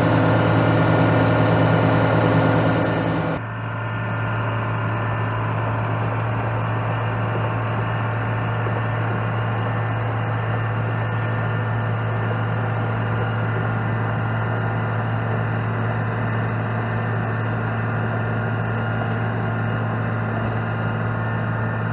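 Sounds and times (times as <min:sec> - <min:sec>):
diesel engine humming: 0:00.0 - 0:03.4.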